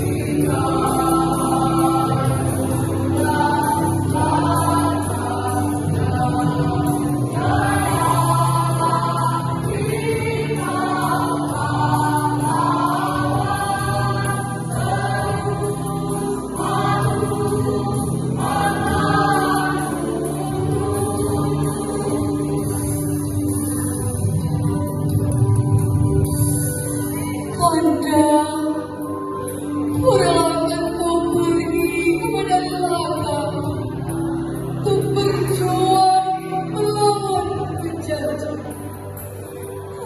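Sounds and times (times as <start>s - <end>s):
choir singing: 0.0s - 24.1s.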